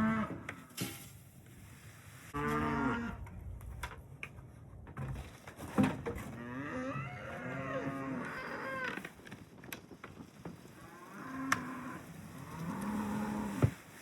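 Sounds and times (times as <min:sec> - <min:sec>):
cattle mooing: 0:00.0 - 0:00.4, 0:02.4 - 0:03.2, 0:06.4 - 0:08.9, 0:10.8 - 0:13.6.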